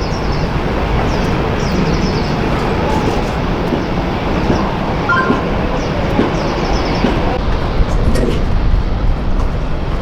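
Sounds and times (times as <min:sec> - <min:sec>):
jet engines rumbling: 0:00.0 - 0:07.9
two-tone chirp: 0:05.1 - 0:05.9.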